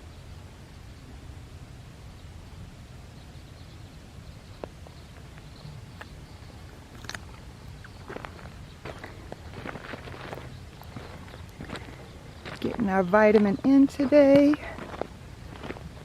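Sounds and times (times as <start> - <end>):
wind rumble on microphone: 0.0 - 16.0
footsteps crunching on stony ground: 6.9 - 16.0.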